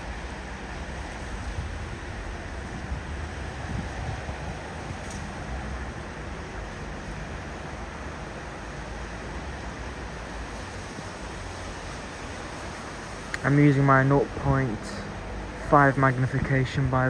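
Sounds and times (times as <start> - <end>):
wind on microphone: 0.0 - 5.9
distant city traffic: 0.0 - 17.0.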